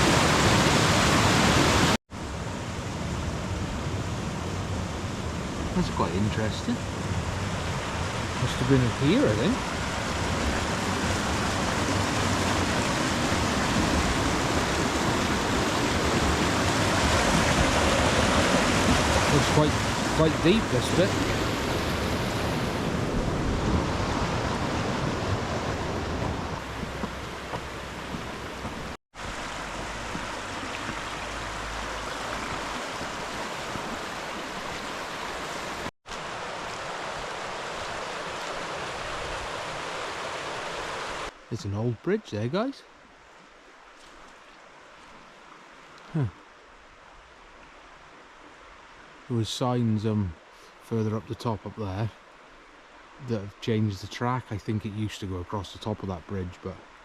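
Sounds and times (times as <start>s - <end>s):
rushing river water: 0.0s - 57.0s
wind rumble on microphone: 20.9s - 35.9s.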